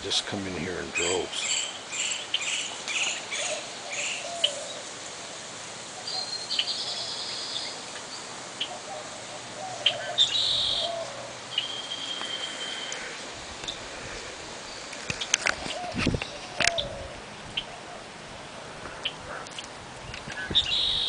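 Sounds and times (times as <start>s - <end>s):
songbirds chirping: 0.0s - 21.0s
buzzy bird trills: 6.0s - 13.1s
high bird whistle: 10.1s - 12.9s, 20.6s - 21.0s.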